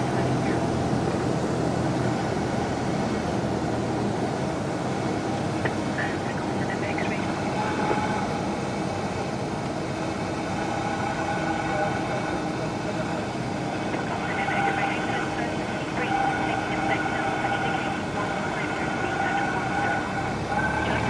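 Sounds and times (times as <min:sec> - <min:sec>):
propeller plane engine drone in cabin: 0:00.0 - 0:21.0.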